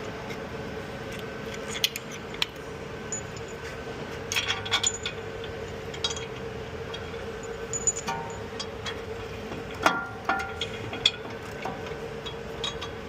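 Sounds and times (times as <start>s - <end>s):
steady running hum: 0.0s - 13.0s
sharp metallic clicks and clinks: 4.3s - 9.0s.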